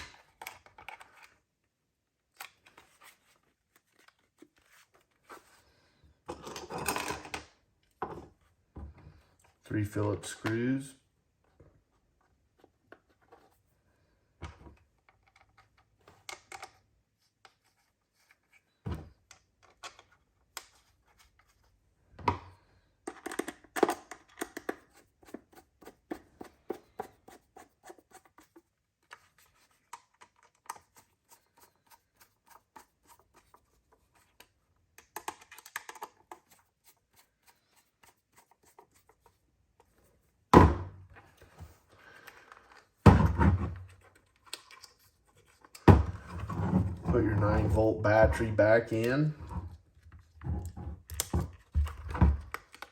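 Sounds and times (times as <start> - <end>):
plastic case being handled: 39.1 - 52.9.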